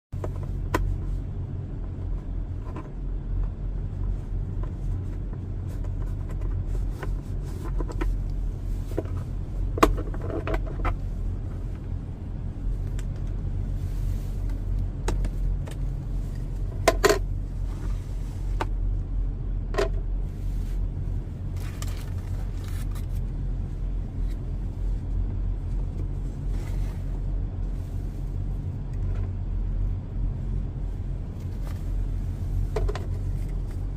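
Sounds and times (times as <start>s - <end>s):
steady low rumble: 0.1s - 33.9s.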